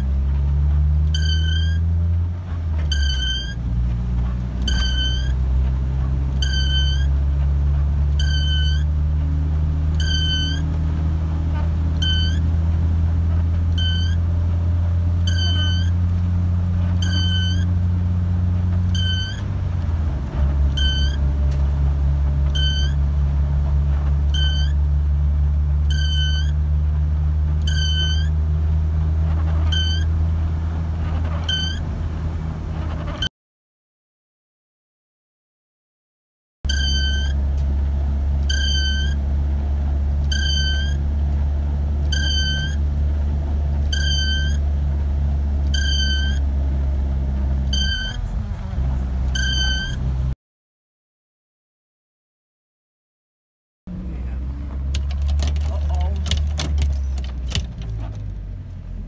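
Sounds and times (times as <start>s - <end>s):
sharp high squeak: 0.0s - 14.4s, 15.0s - 16.1s, 16.8s - 19.7s, 20.3s - 26.8s, 27.4s - 28.6s, 29.2s - 32.1s, 32.7s - 33.3s, 36.7s - 50.4s
vehicle engine drone: 0.0s - 33.3s, 36.7s - 50.4s, 53.9s - 59.0s.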